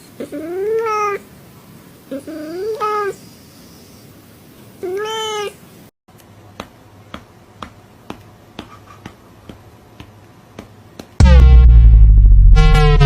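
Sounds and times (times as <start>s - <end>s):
electronic music with deep bass: 11.2s - 13.0s.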